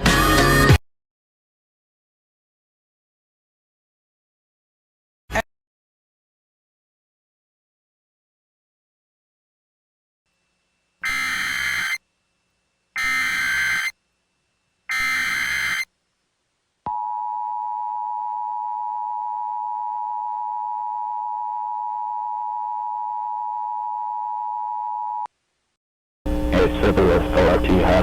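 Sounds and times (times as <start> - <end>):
harsh attention tone: 11.0 - 12.0, 13.0 - 14.0, 14.9 - 15.9
screechy digital data bursts: 11.0 - 12.0, 13.0 - 14.0, 14.9 - 15.9.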